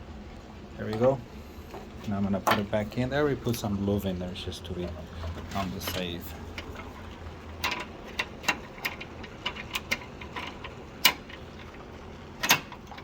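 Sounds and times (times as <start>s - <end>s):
metal lock parts clicking: 12.4s - 13.0s.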